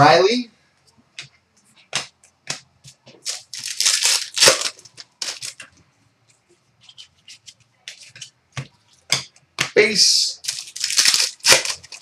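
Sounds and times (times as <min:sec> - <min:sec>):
packaging rustling and crinkling: 0:03.1 - 0:05.7, 0:10.4 - 0:12.0
trading cards clicking and snapping: 0:10.4 - 0:12.0.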